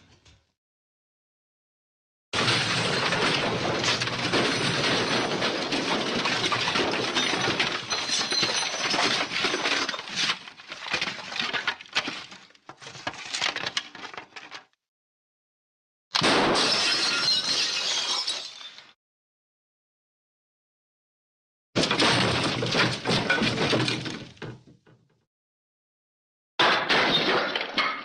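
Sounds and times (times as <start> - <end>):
debris crashing and smashing: 2.4 - 14.6, 21.8 - 24.6, 26.6 - 28.0
pieces clinking and tinkling: 7.2 - 9.9.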